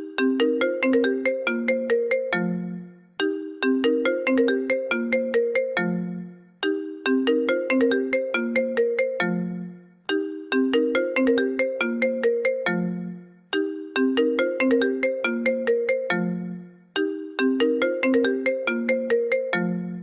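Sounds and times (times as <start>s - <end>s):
phone ringtone melody: 0.0s - 20.0s.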